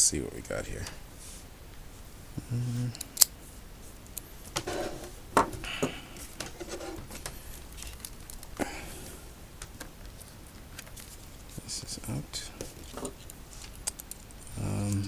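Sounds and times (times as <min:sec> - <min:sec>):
scraping rustles of parts handled: 0:04.4 - 0:08.6, 0:10.0 - 0:15.0.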